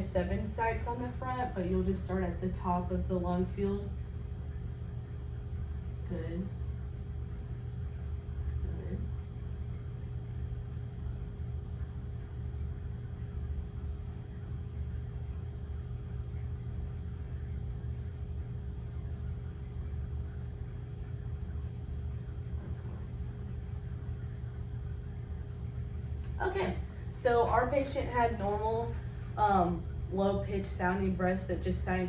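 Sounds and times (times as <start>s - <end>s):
faint even hum: 0.0s - 32.0s
steady low rumble: 0.0s - 32.0s.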